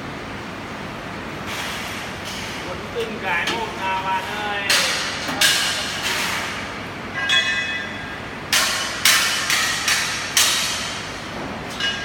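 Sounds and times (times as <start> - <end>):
sharp metallic clanks: 3.0 - 3.9.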